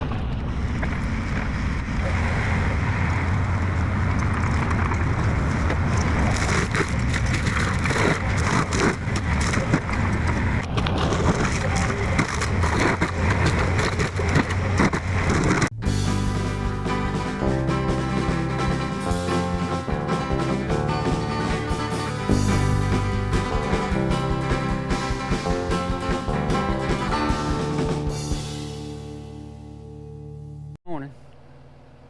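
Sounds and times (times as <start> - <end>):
diesel engine running: 15.6 - 30.8.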